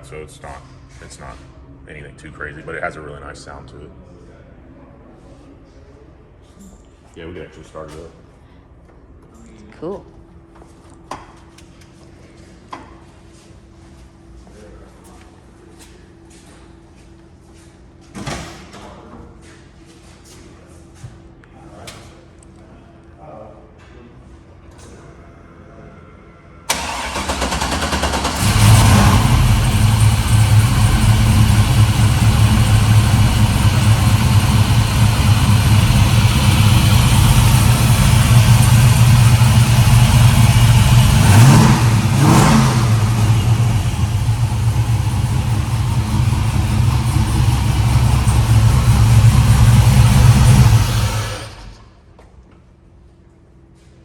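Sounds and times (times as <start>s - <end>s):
car engine idling and revving: 26.7s - 51.9s
engine cranking: 26.7s - 51.9s.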